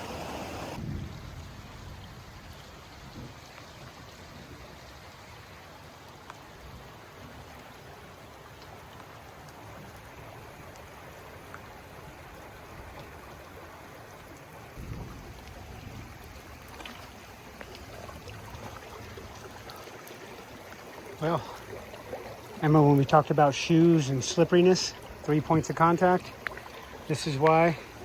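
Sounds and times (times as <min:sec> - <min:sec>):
river rushing: 0:00.0 - 0:00.8, 0:07.8 - 0:28.0
rain falling: 0:00.0 - 0:28.0
raindrop taps: 0:14.7 - 0:28.0.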